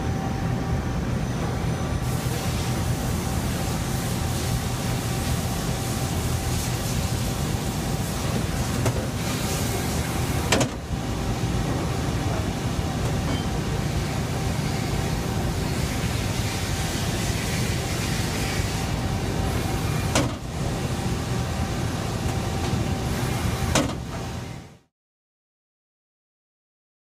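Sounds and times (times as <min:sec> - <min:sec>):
lathe machine hum: 0:00.0 - 0:24.8
thin steady whine: 0:00.0 - 0:24.9.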